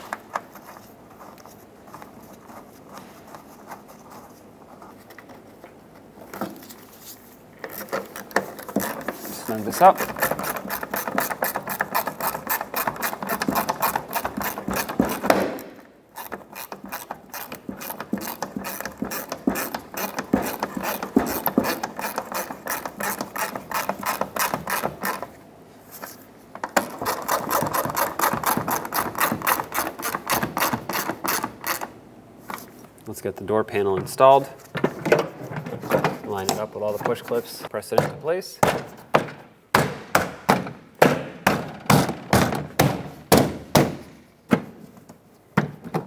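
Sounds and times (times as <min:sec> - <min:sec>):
hand ratchet clicking: 0:07.7 - 0:25.3, 0:26.8 - 0:32.0.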